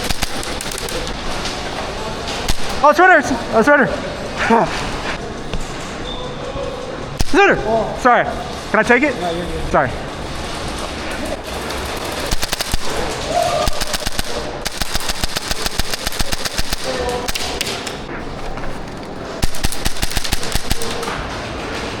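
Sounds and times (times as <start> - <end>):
airsoft guns firing full-auto: 0.0 - 1.5, 2.5 - 3.0, 7.2 - 7.6, 11.4 - 18.1, 19.4 - 21.2.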